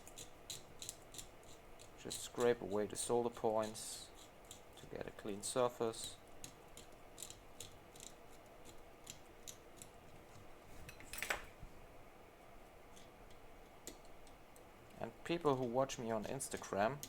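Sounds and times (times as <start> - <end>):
knife scraping solder: 0.0 - 10.0.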